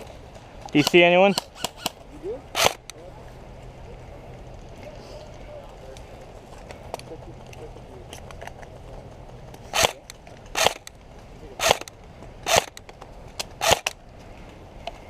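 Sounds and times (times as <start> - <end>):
airsoft gun shots: 11.6 - 11.9.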